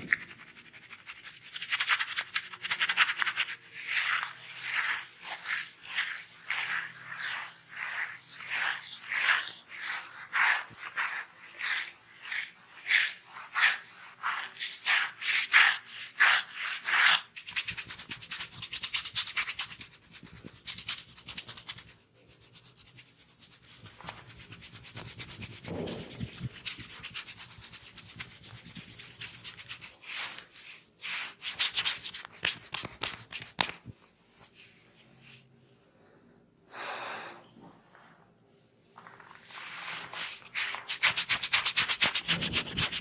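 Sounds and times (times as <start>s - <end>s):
hair and scalp being scratched: 0.1s - 34.6s, 39.4s - 43.0s.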